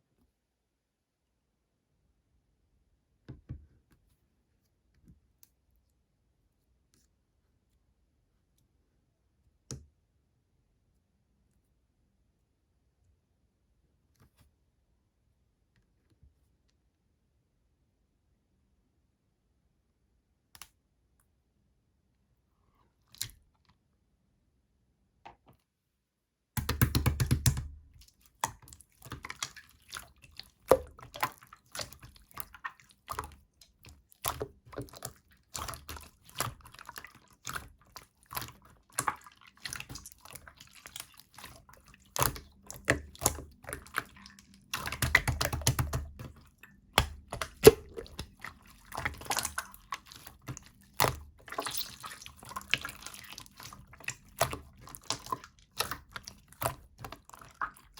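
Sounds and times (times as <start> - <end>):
rapid slime crackling: 26.6 - 57.9
slime squished by hand: 26.6 - 57.9.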